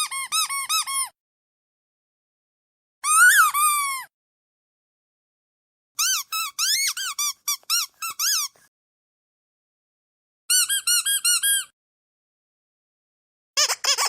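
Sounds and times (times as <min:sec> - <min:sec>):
squeaky dog toy squeaking: 0:00.0 - 0:01.2, 0:03.0 - 0:04.1, 0:06.0 - 0:08.6, 0:10.5 - 0:11.7, 0:13.6 - 0:14.0.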